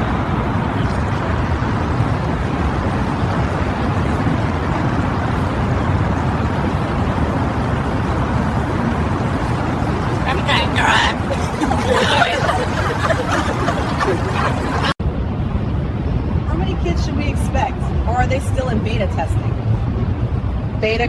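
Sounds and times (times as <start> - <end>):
steady low rumbling: 0.0 - 21.0.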